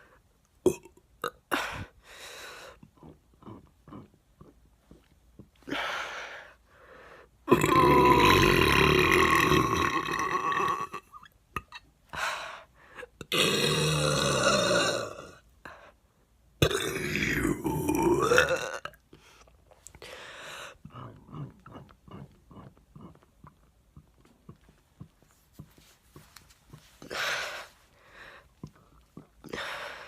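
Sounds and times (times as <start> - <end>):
woman belching: 7.5 - 11.8, 13.2 - 15.4, 16.6 - 19.0.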